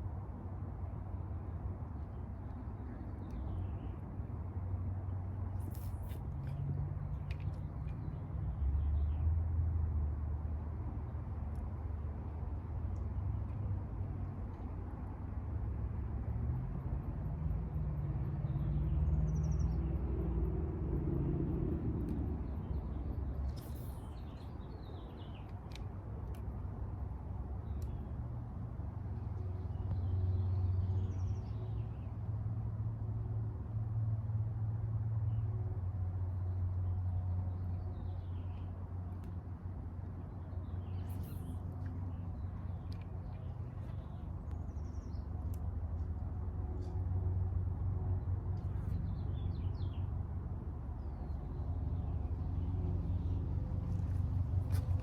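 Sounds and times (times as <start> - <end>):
passing motor traffic rumble: 0.0 - 55.0
faint bird chirps: 40.6 - 45.2.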